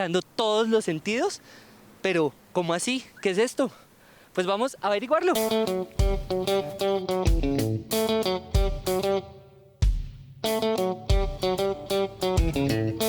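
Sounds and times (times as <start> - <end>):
low drum beat: 5.4 - 6.6, 7.3 - 9.1, 9.8 - 10.5, 11.1 - 13.0
plucked guitar riff: 5.4 - 9.6, 10.4 - 13.0.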